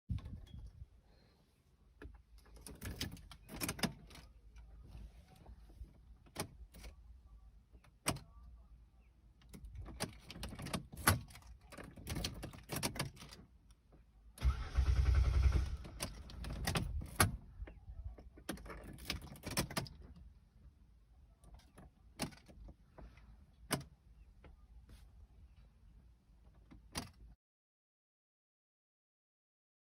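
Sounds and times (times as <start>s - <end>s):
starter cranking engine: 14.4s - 17.0s.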